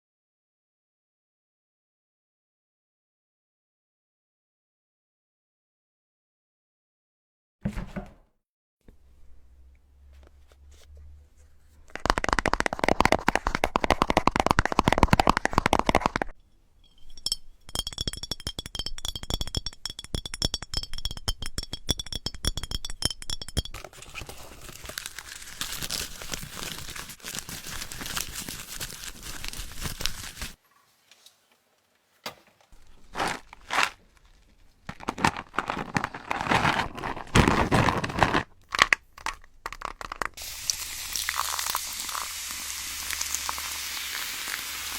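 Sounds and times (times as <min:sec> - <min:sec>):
close crunching and crinkling: 0:23.8 - 0:30.6, 0:32.8 - 0:40.4.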